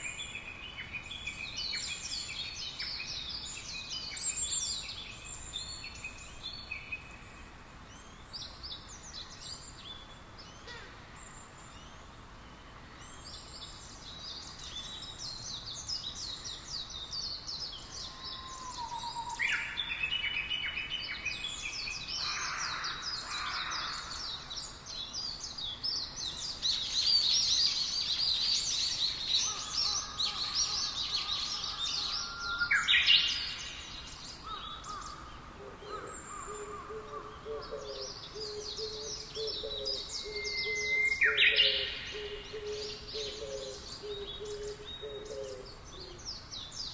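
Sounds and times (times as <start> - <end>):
songbirds chirping and trilling: 0.0 - 46.9
lower bird call: 18.0 - 20.8, 26.7 - 46.4.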